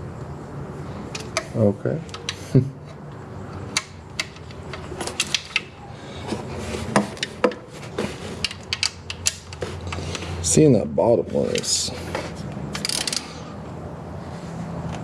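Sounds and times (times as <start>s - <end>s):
metal tools clicking and knocking: 3.7s - 5.8s, 8.4s - 10.0s, 12.7s - 13.4s.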